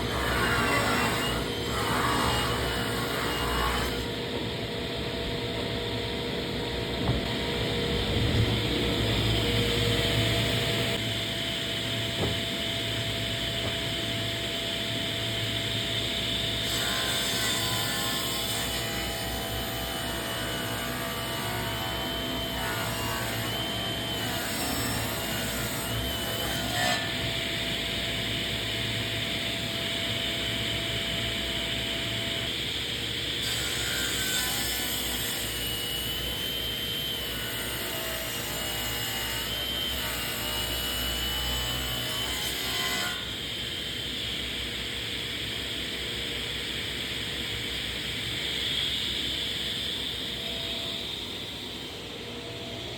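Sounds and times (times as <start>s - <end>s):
power saw whining drone: 6.3s - 16.7s.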